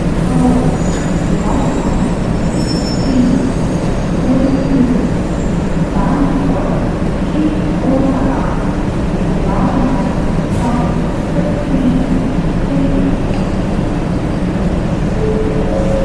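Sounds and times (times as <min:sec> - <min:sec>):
train rumbling: 0:00.0 - 0:16.0
train wheel squeals: 0:00.3 - 0:05.8.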